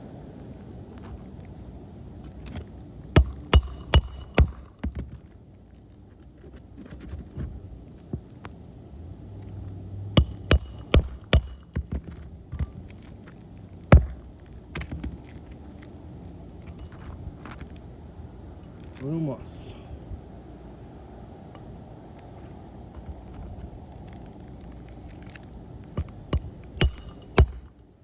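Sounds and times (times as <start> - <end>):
hammer striking roofing nails: 3.2 - 5.2, 10.2 - 12.7, 13.9 - 15.1, 26.0 - 27.8.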